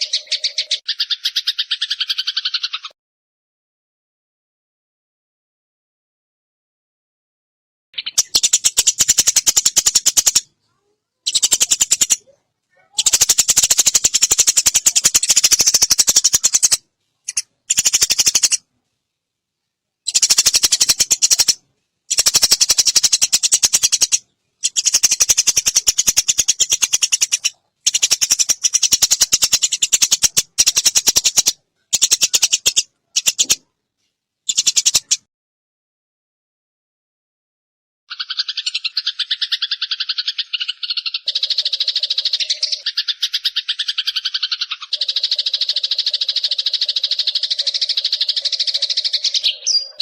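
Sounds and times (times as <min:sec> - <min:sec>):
sparrow rattling chatter calls: 0:00.0 - 0:02.9, 0:08.0 - 0:10.5, 0:11.3 - 0:18.6, 0:20.0 - 0:33.6, 0:34.5 - 0:35.3, 0:38.1 - 0:50.0.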